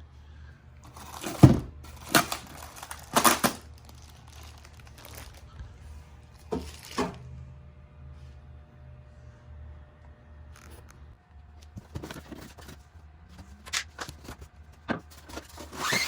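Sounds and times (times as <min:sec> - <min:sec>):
packing material rustling: 0:00.9 - 0:05.6, 0:06.5 - 0:07.2.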